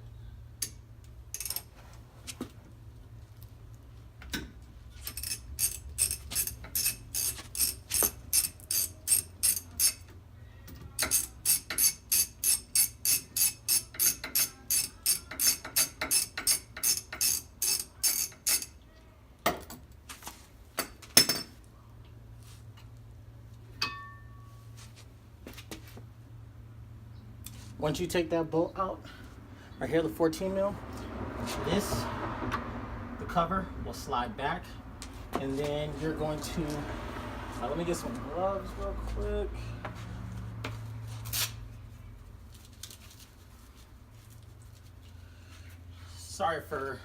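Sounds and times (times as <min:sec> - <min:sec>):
ratchet wrench clicking: 0:00.6 - 0:01.7, 0:05.0 - 0:10.1, 0:11.0 - 0:18.8.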